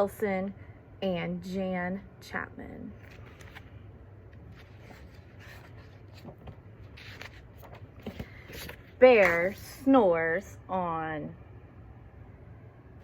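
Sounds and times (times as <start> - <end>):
low steady hum: 0.0 - 13.0
book pages rustling: 3.0 - 9.6.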